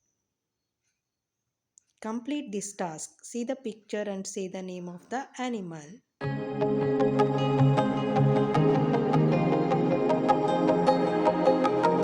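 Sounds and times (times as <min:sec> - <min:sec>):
background music with light beat: 0:06.2 - 0:12.0.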